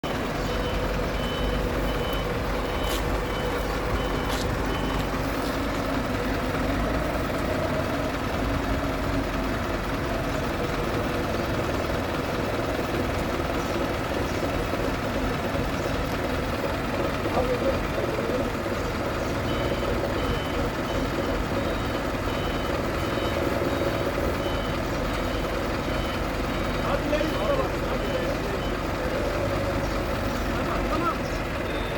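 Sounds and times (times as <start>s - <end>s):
high electronic beeps: 0.0s - 5.8s, 31.6s - 31.9s
machinery humming: 0.0s - 31.9s.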